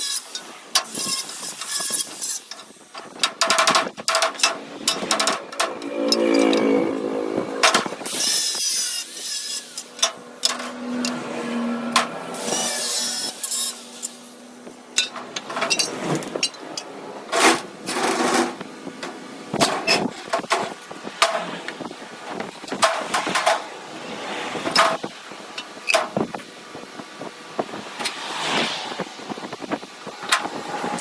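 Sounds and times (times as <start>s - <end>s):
steel knocks and clanks: 2.5s - 6.6s, 9.9s - 11.2s, 15.0s - 21.6s.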